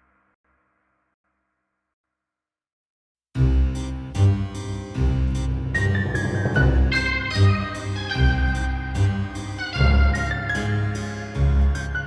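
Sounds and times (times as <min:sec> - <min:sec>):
background music with deep bass: 0:03.4 - 0:12.0.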